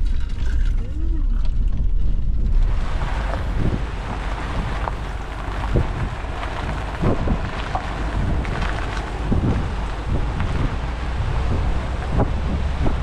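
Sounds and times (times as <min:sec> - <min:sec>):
low rumble: 0:00.0 - 0:13.0
wind buffeting microphone: 0:00.0 - 0:13.0
steady rushing hiss: 0:02.6 - 0:13.0.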